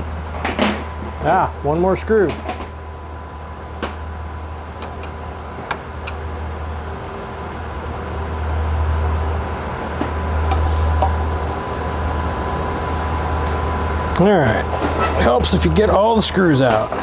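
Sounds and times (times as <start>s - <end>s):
faint steady whine: 0.0s - 17.0s
machinery fans humming: 0.0s - 17.0s
tools tapping on metal casing: 0.3s - 2.8s, 3.8s - 4.1s, 4.8s - 6.2s.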